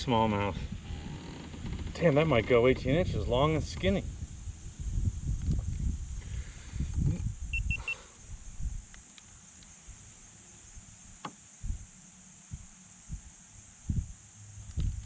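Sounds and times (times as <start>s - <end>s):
short high beeps: 7.5s - 8.0s.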